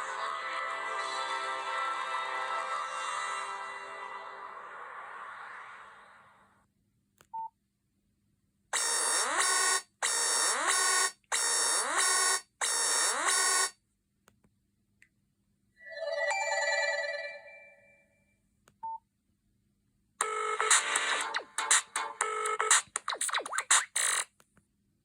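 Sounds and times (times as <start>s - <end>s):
phone ringtone electronic pulses: 15.8s - 18.0s.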